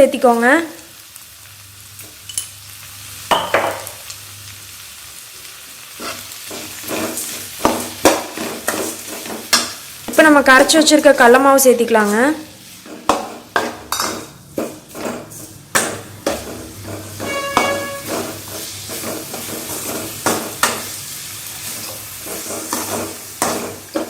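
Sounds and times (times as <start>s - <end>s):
light sizzle: 0.0s - 24.0s
ladle scraping a pan: 6.0s - 9.6s, 12.6s - 21.0s, 21.6s - 24.0s.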